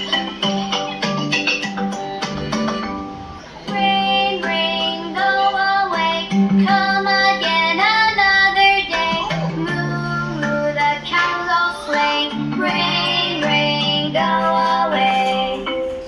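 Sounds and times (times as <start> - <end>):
plucked-string accompaniment: 0.0 - 16.0
child-like voice singing: 3.7 - 15.9.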